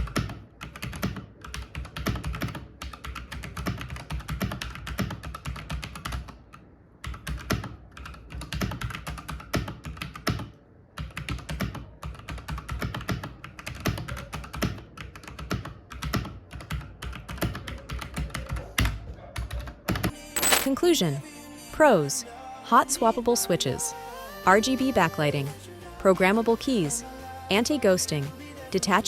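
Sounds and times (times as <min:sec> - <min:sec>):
fast typing on mechanical keyboard: 0:00.0 - 0:06.4, 0:07.0 - 0:18.6.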